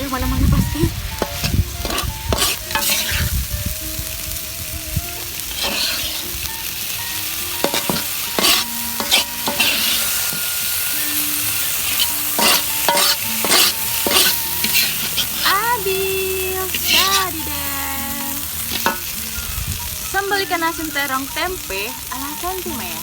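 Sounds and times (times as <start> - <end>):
food sizzling in a pan: 0.0 - 23.0
spatula scraping and stirring: 1.0 - 3.3, 5.3 - 15.8, 16.6 - 19.2.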